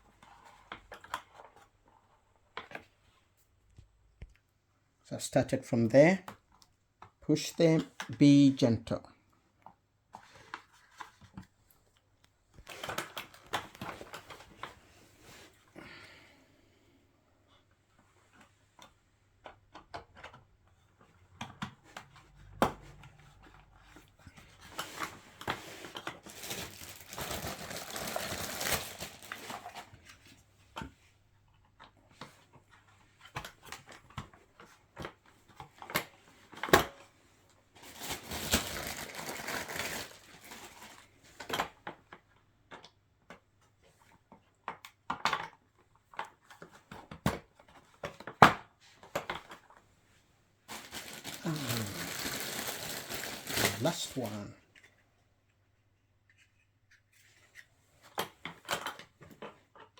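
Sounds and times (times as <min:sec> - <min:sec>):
plastic rustling and scraping: 0:12.6 - 0:15.7, 0:22.9 - 0:30.5, 0:37.7 - 0:41.8, 0:48.9 - 0:55.0
plastic parts clicking and knocking: 0:18.3 - 0:24.8, 0:41.4 - 0:49.7.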